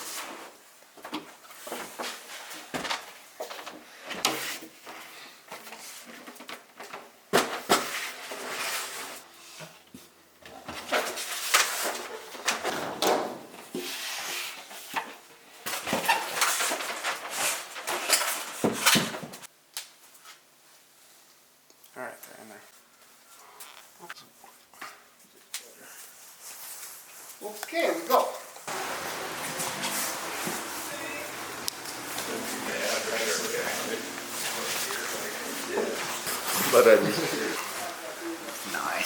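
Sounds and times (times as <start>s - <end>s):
objects knocking and scraping: 28.7s - 32.7s, 34.0s - 37.8s.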